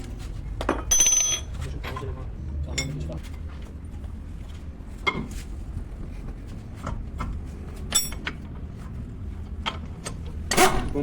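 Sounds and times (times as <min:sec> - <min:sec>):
steady low hum: 0:00.0 - 0:11.0
metal tools clinking on car parts: 0:00.6 - 0:03.1, 0:07.9 - 0:08.4.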